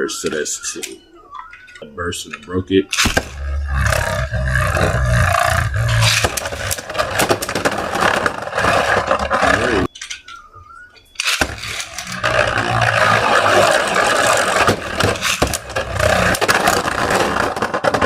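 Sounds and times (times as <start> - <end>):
spinning tops scraping whir: 4.0 - 10.6, 11.2 - 18.0
sharp clicks of tops hitting: 9.8 - 12.1.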